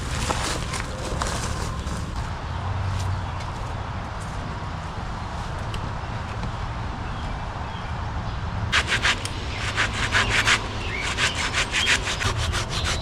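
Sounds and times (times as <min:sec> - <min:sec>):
hand saw cutting a log: 0:08.7 - 0:13.0.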